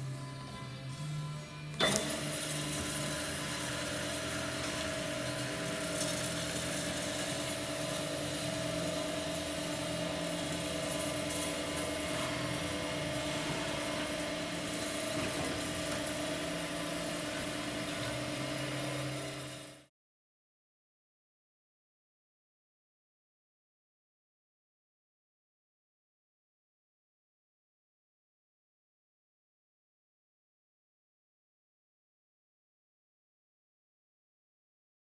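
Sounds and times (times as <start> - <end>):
band saw humming: 0.0 - 19.8.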